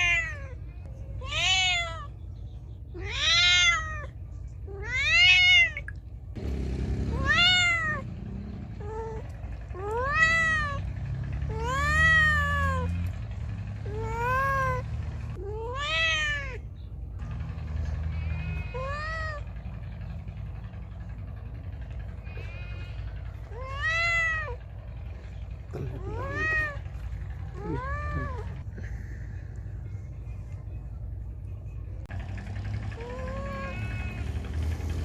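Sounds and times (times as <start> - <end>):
cat meowing loudly: 1.2 - 2.1, 3.0 - 4.1, 4.7 - 5.9, 7.1 - 8.0, 15.4 - 16.6, 26.0 - 26.9, 33.1 - 34.4.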